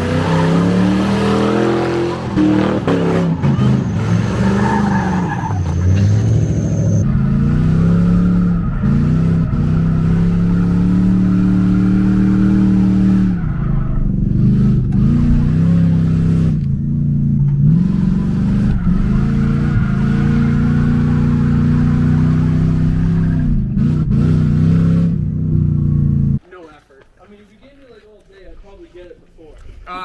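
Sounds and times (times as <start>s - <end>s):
car engine revving: 0.0s - 26.4s.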